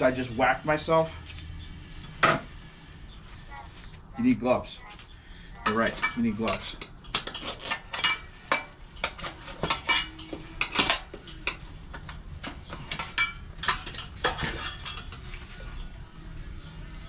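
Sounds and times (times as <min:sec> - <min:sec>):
tire irons clinking on metal: 0:05.6 - 0:15.4.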